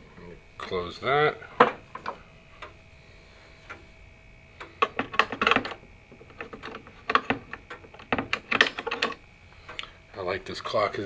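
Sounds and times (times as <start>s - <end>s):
clock case clicks and rattles: 4.8s - 9.2s.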